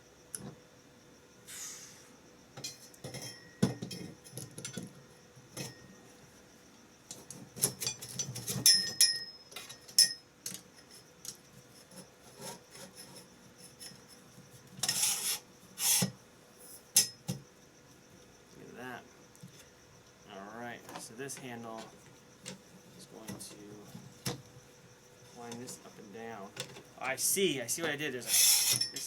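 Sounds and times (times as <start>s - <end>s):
rasping metal scrapes: 11.8s - 13.9s, 14.8s - 16.1s, 28.2s - 29.0s.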